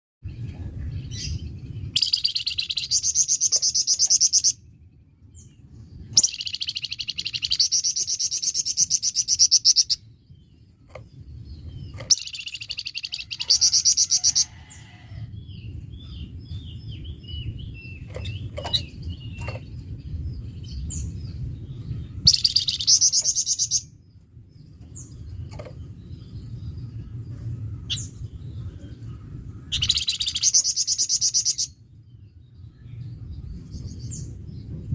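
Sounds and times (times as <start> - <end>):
steady low hum: 0.2 - 34.9
soft bird chirps and whistles: 0.5 - 4.7, 5.5 - 10.1, 10.8 - 14.9, 16.7 - 24.0, 25.1 - 31.8.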